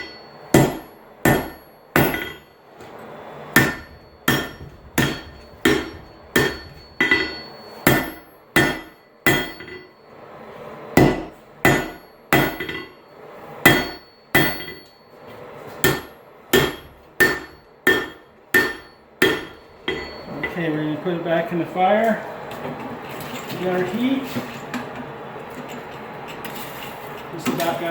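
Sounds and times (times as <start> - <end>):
hammer striking metal on anvil: 0.0 - 2.6, 3.6 - 10.0, 11.0 - 13.0, 13.6 - 15.0, 15.8 - 20.6.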